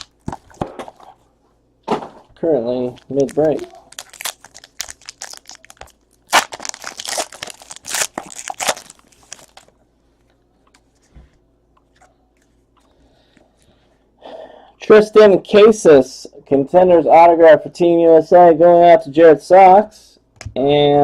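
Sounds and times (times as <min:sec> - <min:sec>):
wrappers crinkling and tearing: 0:00.0 - 0:00.2, 0:02.8 - 0:09.8.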